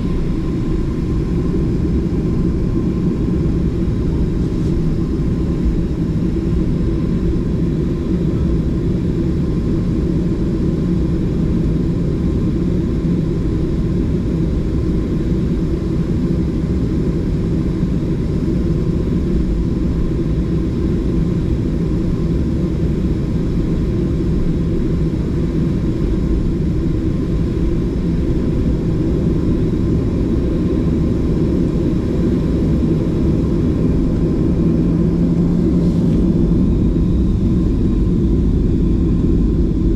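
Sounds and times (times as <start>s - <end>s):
jet engine cabin drone: 0.0s - 39.9s.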